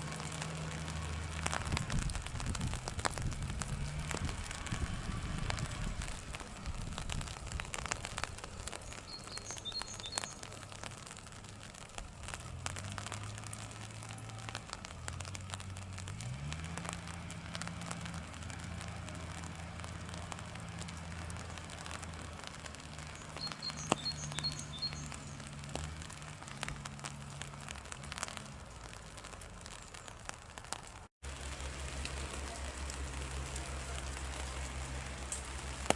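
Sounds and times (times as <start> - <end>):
raindrops tapping on umbrella: 0.0 - 35.9.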